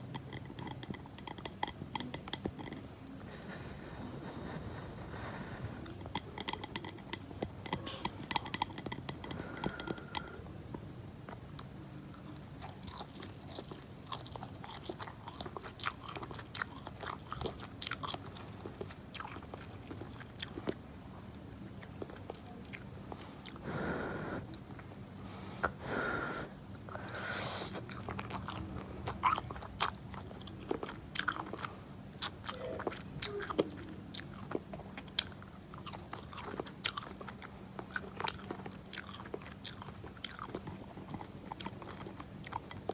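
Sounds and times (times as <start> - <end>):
wet mouth clicks: 0.1 - 2.8, 6.1 - 10.4.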